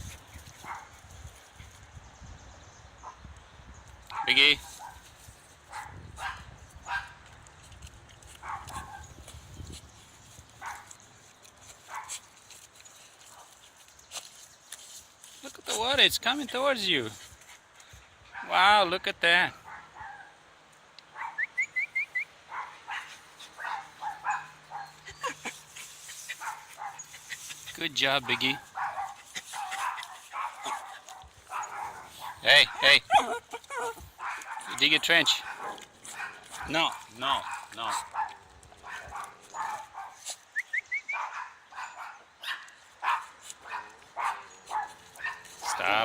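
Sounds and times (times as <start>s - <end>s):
dog barking: 4.1s - 5.0s, 5.7s - 7.2s, 8.4s - 9.1s, 18.3s - 18.5s, 19.6s - 20.4s, 21.1s - 21.5s, 22.5s - 25.0s, 26.4s - 27.0s, 28.2s - 40.2s, 41.1s - 46.0s.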